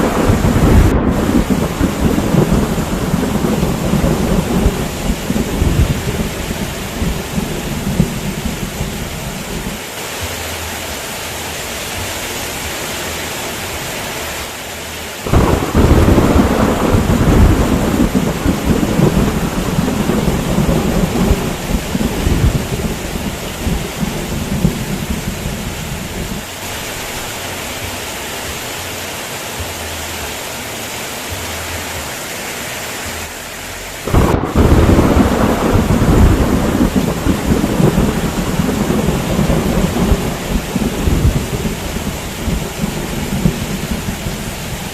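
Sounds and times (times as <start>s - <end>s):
thunder rolling: 0.0s - 9.8s, 15.2s - 27.2s, 34.0s - 44.9s
heavy rain: 0.0s - 44.9s.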